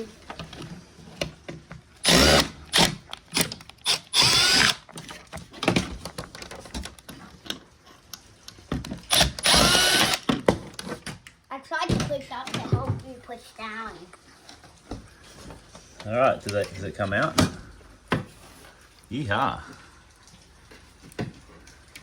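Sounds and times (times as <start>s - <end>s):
power drill whirring: 2.0s - 4.9s, 9.1s - 10.3s.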